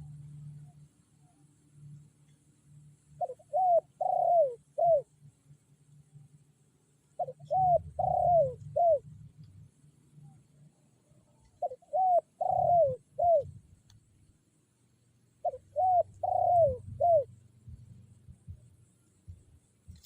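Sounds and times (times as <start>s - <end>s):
dove cooing: 3.2s - 5.1s, 7.2s - 9.1s, 11.5s - 13.6s, 15.4s - 17.8s.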